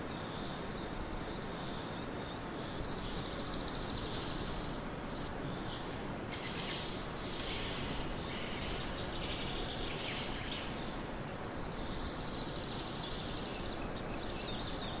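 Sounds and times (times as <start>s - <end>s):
steady outdoor hiss: 0.0s - 15.0s
small birds chirping and trilling: 0.1s - 15.0s.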